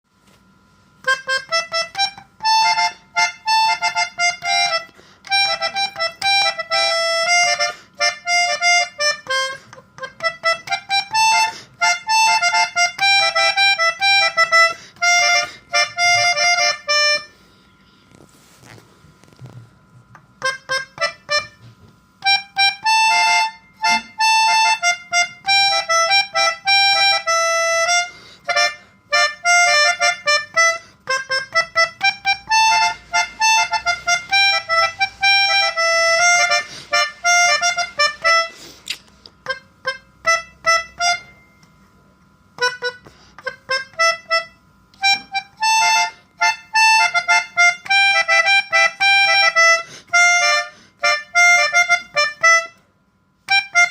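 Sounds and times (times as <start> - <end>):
multi-tone bus horn melody: 22.3 - 38.5.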